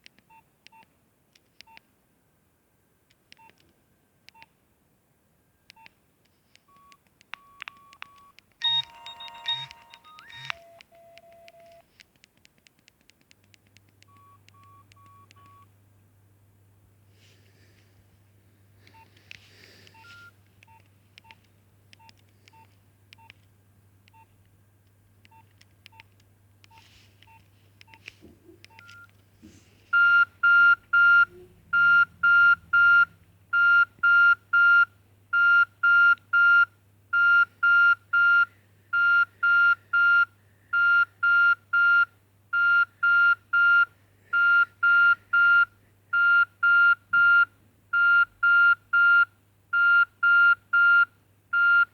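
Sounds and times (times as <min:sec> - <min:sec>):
short key beeps: 0:08.6 - 0:11.6
electronic ringtone beeps: 0:08.6 - 0:11.8.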